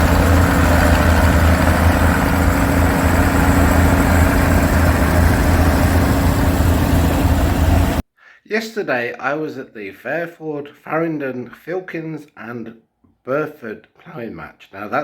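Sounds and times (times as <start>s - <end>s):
tractor engine running: 0.0s - 8.0s.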